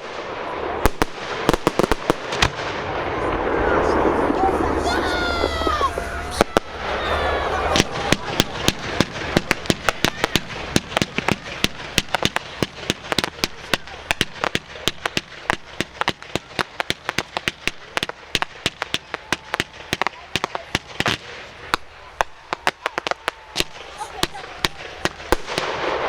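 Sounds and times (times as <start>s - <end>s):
fireworks crackling bangs: 0.0s - 26.0s.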